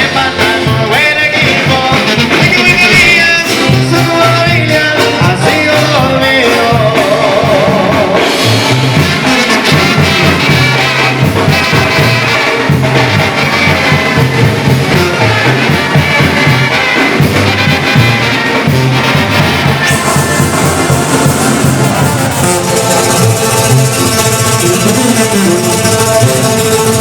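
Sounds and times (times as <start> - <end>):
bass line: 0.0 - 27.0
brass band music: 0.0 - 27.0.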